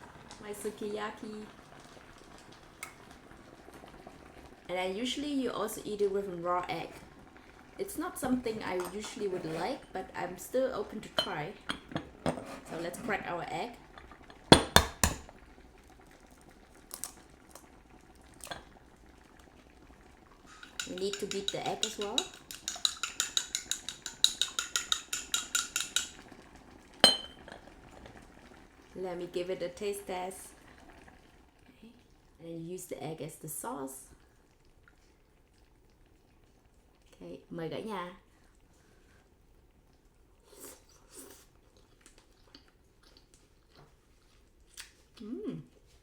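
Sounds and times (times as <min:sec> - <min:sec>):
utensil clinking against bowl: 0:20.5 - 0:26.2, 0:27.0 - 0:27.6
soft chewing: 0:39.9 - 0:46.0.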